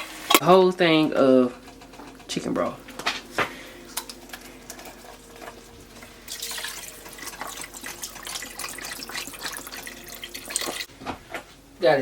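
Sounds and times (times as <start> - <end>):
broth splashing into pot: 6.0 - 10.9.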